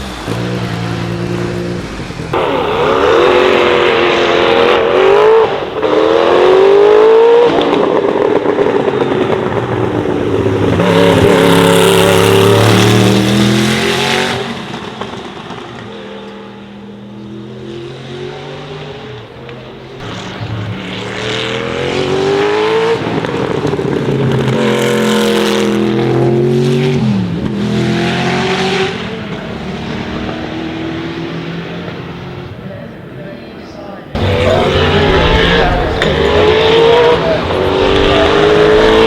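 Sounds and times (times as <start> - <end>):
race car engine at full throttle: 0.0 - 33.2, 34.2 - 39.0.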